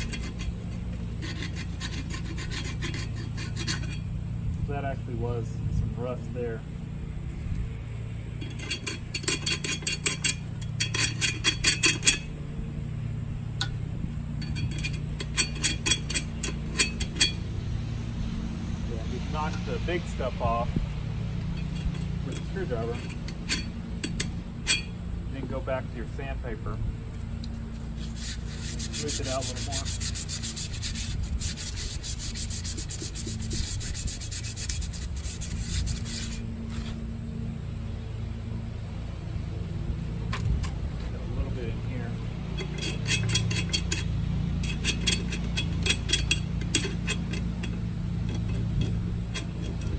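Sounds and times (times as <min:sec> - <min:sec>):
screwdriver scraping metal rim: 0:00.0 - 0:04.1, 0:08.4 - 0:12.4, 0:13.6 - 0:17.5, 0:21.4 - 0:26.2, 0:27.2 - 0:37.1, 0:42.4 - 0:49.9.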